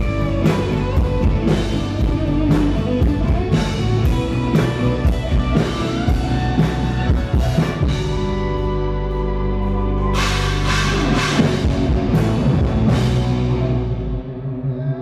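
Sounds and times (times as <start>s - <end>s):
rock band music: 0.0s - 14.6s
drum hits: 10.2s - 13.7s.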